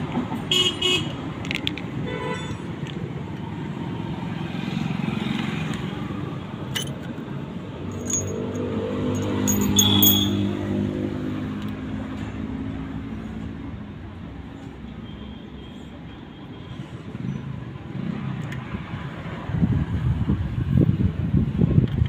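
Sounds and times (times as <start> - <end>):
light metallic clinks: 7.9 - 10.4.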